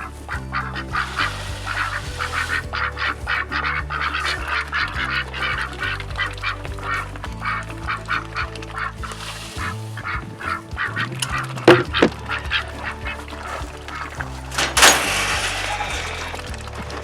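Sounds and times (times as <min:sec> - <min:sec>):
background music: 0:00.0 - 0:17.0.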